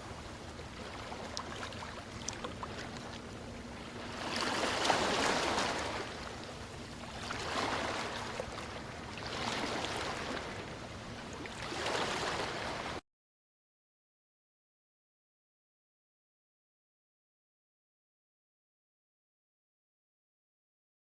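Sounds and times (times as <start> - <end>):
ocean waves washing in: 0.0 - 13.0.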